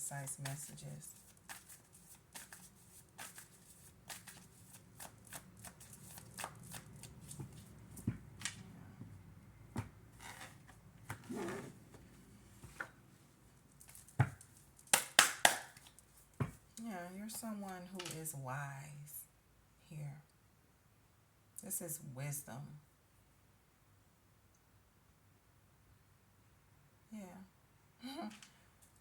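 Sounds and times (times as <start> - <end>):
cards being shuffled: 0.3 - 8.6, 9.8 - 12.9.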